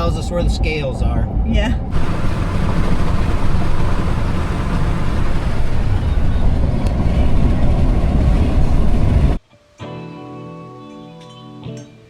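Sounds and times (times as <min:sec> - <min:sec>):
truck road and engine noise: 0:00.0 - 0:09.4.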